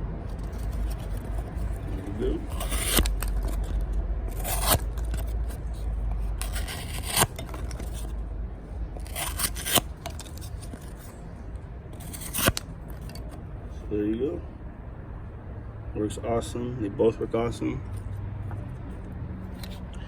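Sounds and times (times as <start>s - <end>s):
knife slicing through cardboard: 0.4s - 8.1s, 9.0s - 11.1s, 12.0s - 13.3s.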